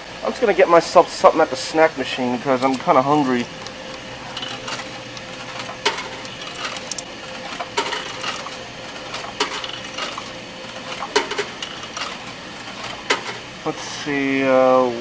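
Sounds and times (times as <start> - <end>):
faint hum: 0.0 - 15.0
coins clinking into vending machine: 2.6 - 13.6.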